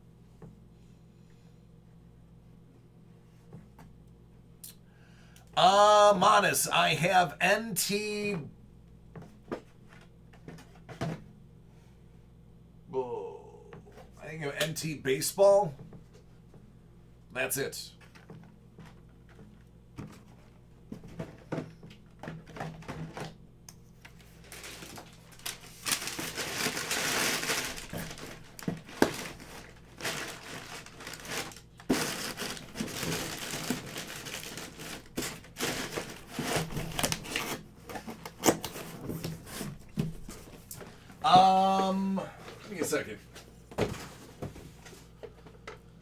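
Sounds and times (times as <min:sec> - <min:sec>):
plastic packaging crinkling: 0:24.0 - 0:39.7.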